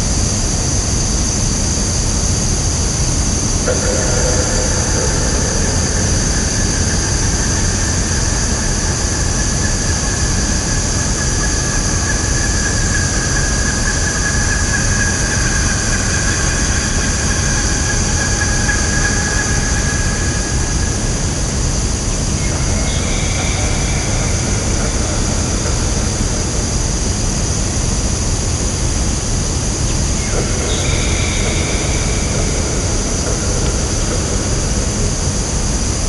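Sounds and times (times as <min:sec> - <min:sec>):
high-pitched drone: 0:03.6 - 0:29.1, 0:29.9 - 0:36.0
low rumble: 0:30.1 - 0:36.0.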